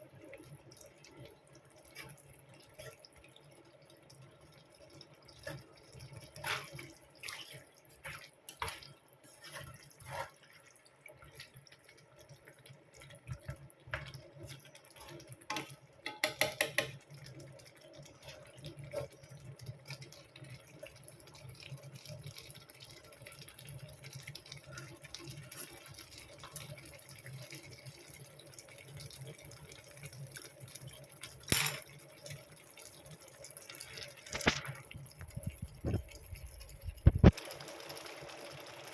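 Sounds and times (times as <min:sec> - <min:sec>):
tap water dripping and running: 0:00.0 - 0:38.9
dishes clinking: 0:15.5 - 0:16.9, 0:31.5 - 0:31.9.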